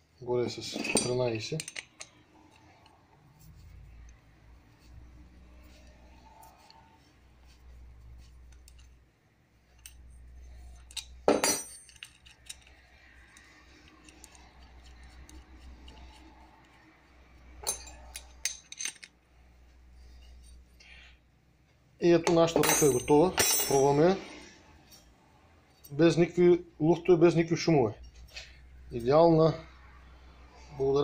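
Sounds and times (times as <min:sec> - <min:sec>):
metal spanners clinking: 0:00.5 - 0:03.5, 0:08.2 - 0:09.0, 0:09.7 - 0:16.8, 0:17.5 - 0:19.2, 0:22.3 - 0:24.0.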